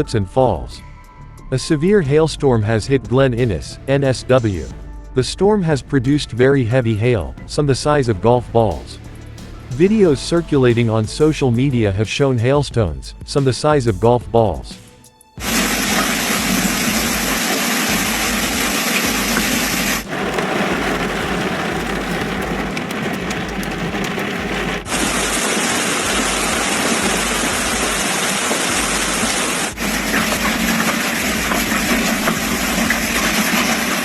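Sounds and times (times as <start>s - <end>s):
hail and rain clattering: 15.4s - 34.0s.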